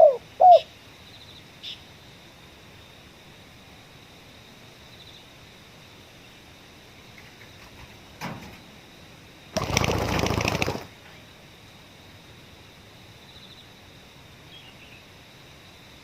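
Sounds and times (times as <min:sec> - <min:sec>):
rapid rustling: 0:09.6 - 0:11.0.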